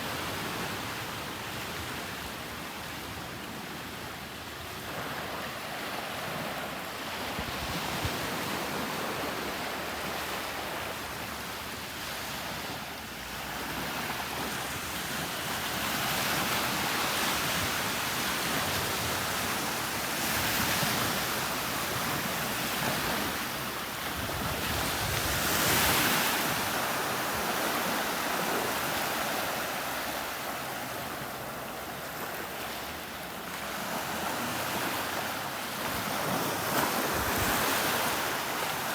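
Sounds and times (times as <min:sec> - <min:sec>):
small waves breaking on sand: 0:00.0 - 0:38.9
wind buffeting microphone: 0:13.7 - 0:28.9.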